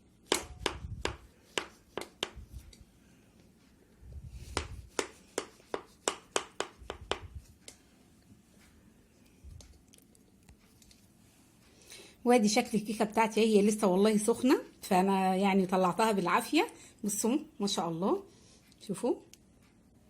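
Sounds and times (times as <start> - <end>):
knife tapping against baking pan: 0.3 - 2.4, 4.5 - 7.3.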